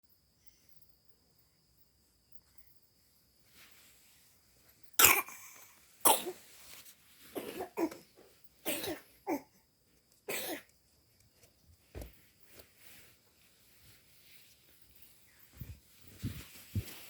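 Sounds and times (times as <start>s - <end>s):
young child coughing: 5.0s - 6.4s, 7.4s - 8.0s, 8.6s - 9.5s, 10.3s - 10.7s.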